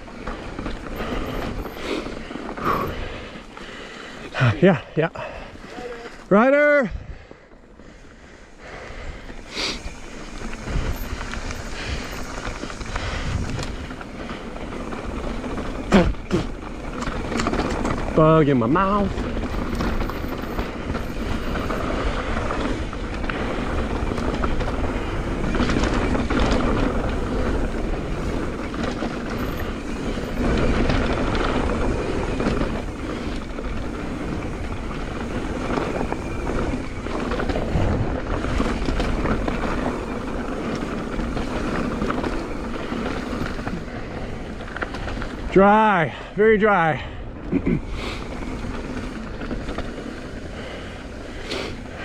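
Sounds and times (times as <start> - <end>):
bike tyres rolling over dirt: 0.0 - 52.0
chain and frame rattling: 9.8 - 22.0, 23.5 - 45.6.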